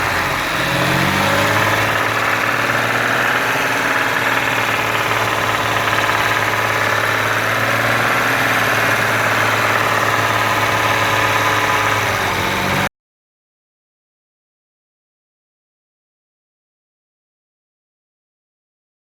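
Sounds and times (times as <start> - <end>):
car engine running: 0.0 - 12.9.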